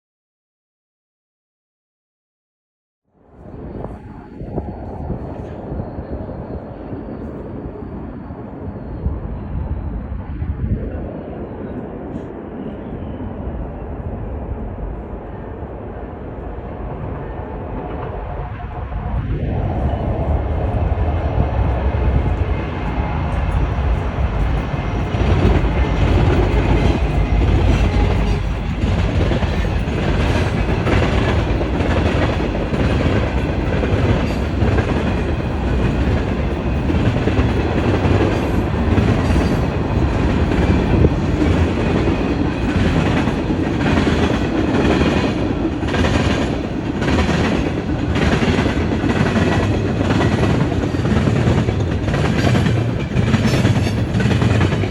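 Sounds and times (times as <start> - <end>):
train wheels clacking: 21.8 - 54.9.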